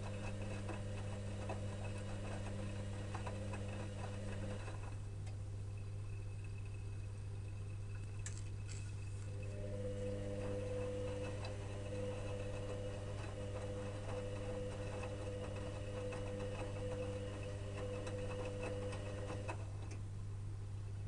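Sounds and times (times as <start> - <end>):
washing machine drum whining: 0.0 - 5.4, 9.3 - 20.0.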